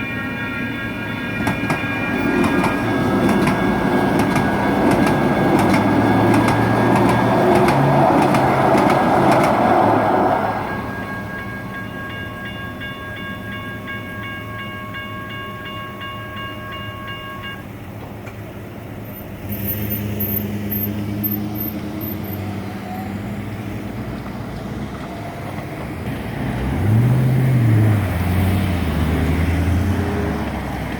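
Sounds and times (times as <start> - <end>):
railroad crossing bell ringing: 0.0 - 24.1.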